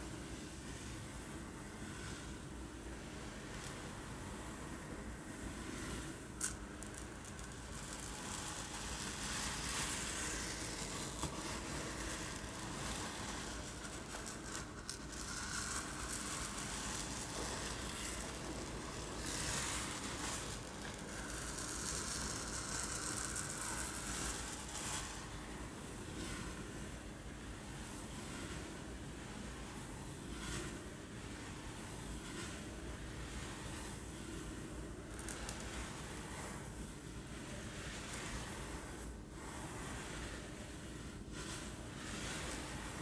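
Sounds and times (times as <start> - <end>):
rice rattling in a container: 5.7 - 26.7, 30.3 - 38.8, 41.2 - 43.0.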